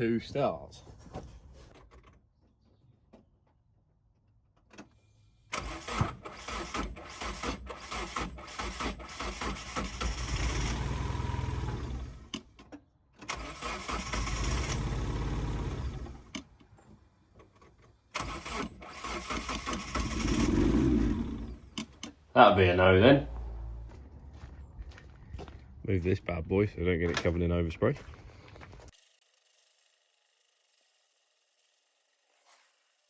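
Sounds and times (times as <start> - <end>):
car engine cranking on starter: 4.8 - 16.5, 17.5 - 22.1.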